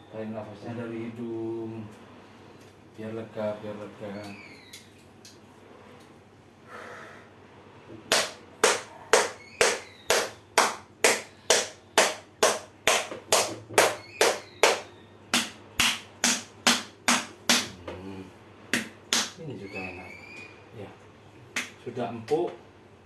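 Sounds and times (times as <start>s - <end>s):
hand slaps on skin: 8.1s - 17.7s, 18.8s - 19.4s, 21.6s - 21.8s.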